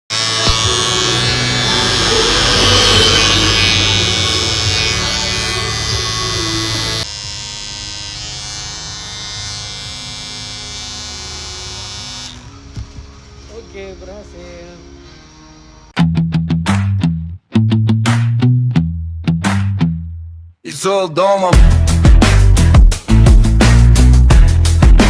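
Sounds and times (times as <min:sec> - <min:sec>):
electric hair clipper buzzing: 0:00.1 - 0:13.0.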